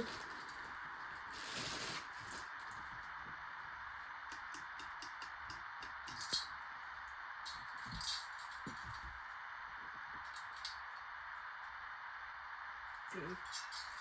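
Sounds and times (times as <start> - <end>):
rustle: 0.0 - 2.9
steady background hiss: 0.0 - 14.0.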